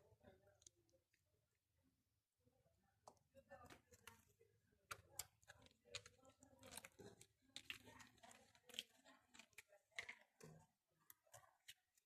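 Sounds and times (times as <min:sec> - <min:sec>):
slime clicking and crackling: 0:03.0 - 0:12.0.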